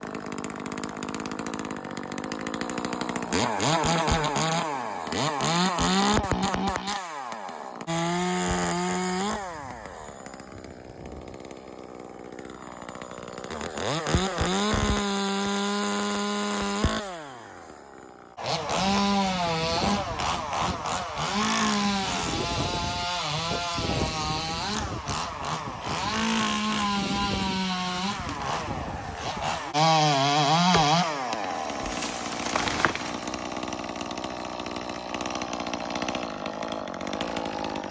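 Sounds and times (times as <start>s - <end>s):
chainsaw revving: 0.0s - 37.9s.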